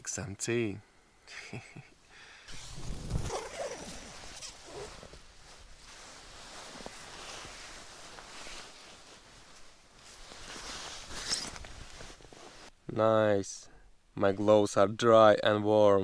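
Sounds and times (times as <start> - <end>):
zipper being pulled: 2.5 - 5.4, 10.4 - 12.3
fabric rustling: 2.5 - 12.8.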